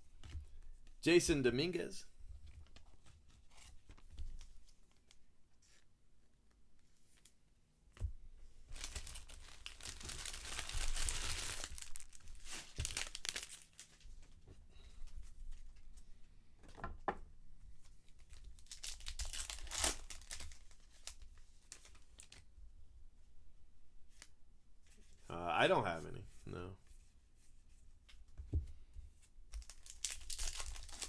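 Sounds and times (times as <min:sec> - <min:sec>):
wrappers torn and crinkled: 0:08.8 - 0:14.0, 0:18.2 - 0:22.4, 0:29.6 - 0:31.0.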